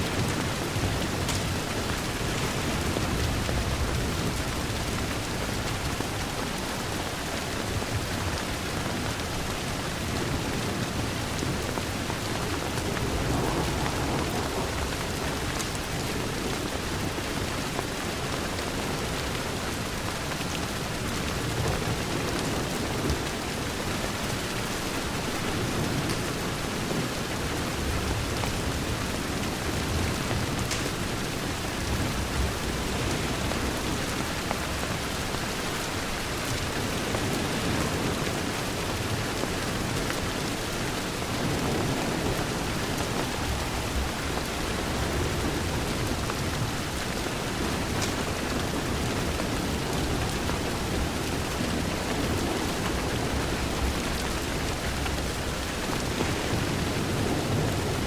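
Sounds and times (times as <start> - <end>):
rain on a window: 0.0 - 58.0
low rumble: 12.2 - 16.4.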